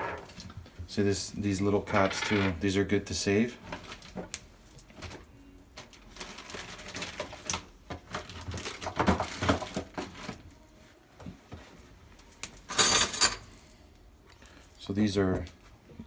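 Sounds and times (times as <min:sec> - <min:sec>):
plastic parts clattering: 0:01.9 - 0:02.6, 0:06.2 - 0:10.4.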